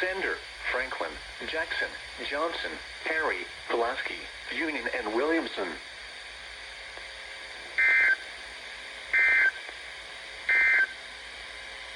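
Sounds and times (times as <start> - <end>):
radio hiss: 0.0 - 8.3.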